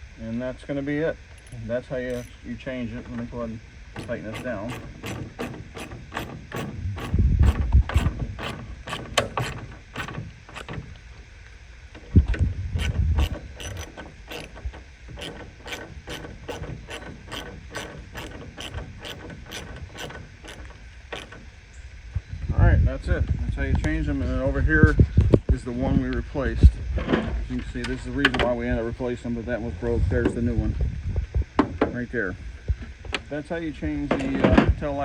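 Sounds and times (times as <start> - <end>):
hand ratchet clicking: 1.4 - 2.4, 4.0 - 10.8, 12.8 - 21.4.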